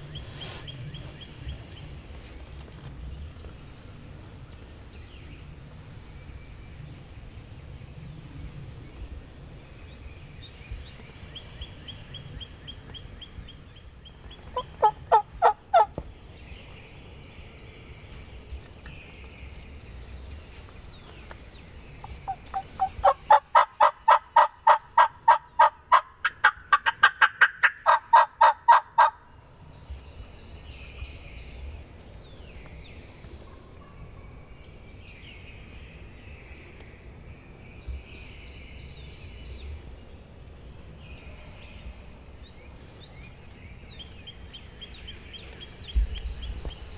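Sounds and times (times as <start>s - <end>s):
turkey yelps: 22.3s - 29.2s.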